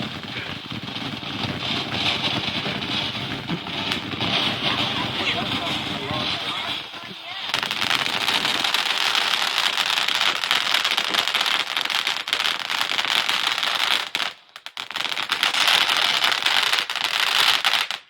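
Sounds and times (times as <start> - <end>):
fountain firework crackling: 0.0 - 18.0.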